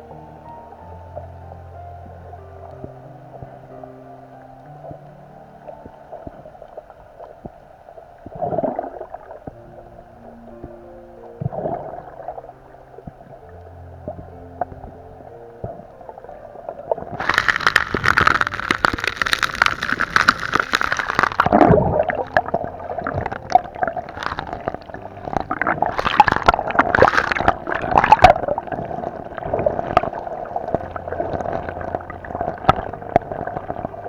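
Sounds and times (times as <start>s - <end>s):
sea water gurgling and sloshing: 2.2s - 34.0s
water bubbling: 11.4s - 34.0s
water splashing: 16.9s - 34.0s.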